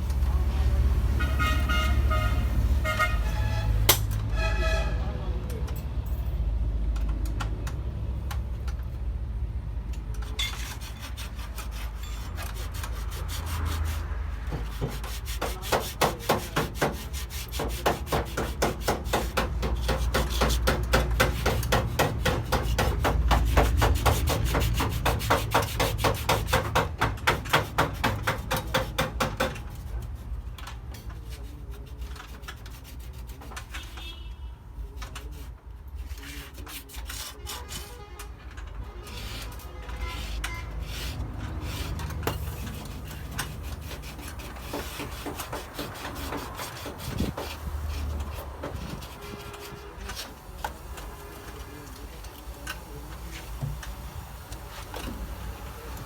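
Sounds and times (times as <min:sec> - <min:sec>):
abrasive scrubbing painted metal: 0:10.2 - 0:30.4, 0:31.2 - 0:34.0, 0:39.0 - 0:53.7.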